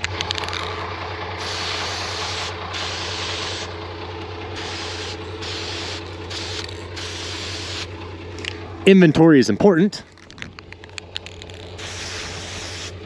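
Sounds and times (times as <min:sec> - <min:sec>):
steady engine hum: 0:00.0 - 0:13.0
spray-paint can hissing: 0:01.4 - 0:03.7, 0:04.6 - 0:07.9, 0:11.8 - 0:13.0.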